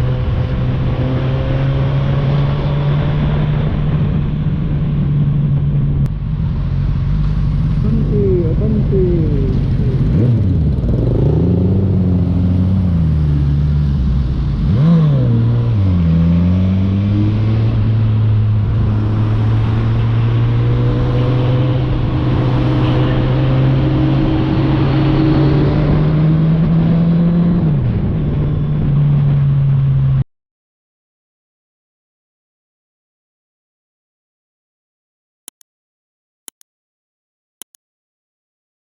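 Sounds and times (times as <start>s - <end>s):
motorcycle engine riding: 0.0s - 25.2s.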